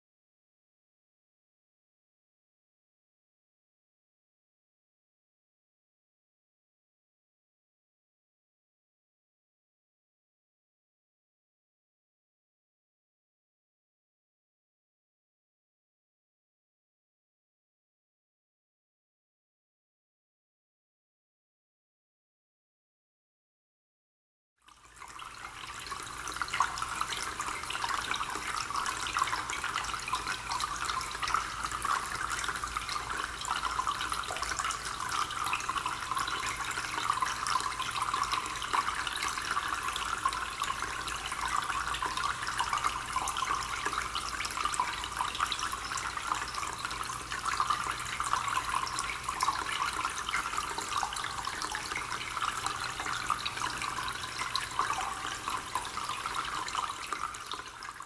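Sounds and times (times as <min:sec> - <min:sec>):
fountain water trickling and splashing: 0:24.6 - 0:58.0.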